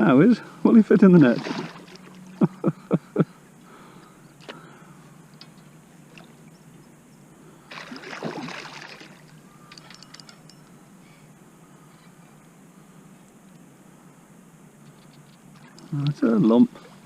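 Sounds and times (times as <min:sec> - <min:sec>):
fish splashing in water: 0:01.2 - 0:02.2, 0:07.7 - 0:09.3.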